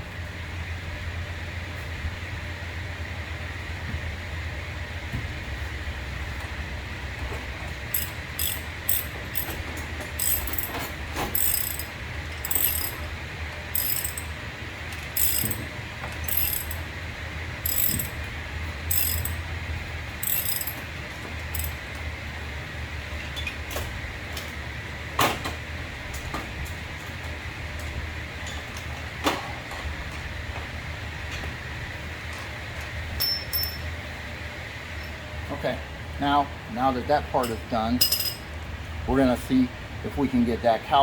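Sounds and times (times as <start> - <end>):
steady low hum: 0.0 - 23.0
ratchet wrench clicking: 7.9 - 9.6, 10.2 - 13.0, 13.8 - 14.3, 15.2 - 15.7, 16.3 - 16.8, 17.6 - 18.2, 18.9 - 19.4, 20.2 - 20.8, 21.5 - 21.8.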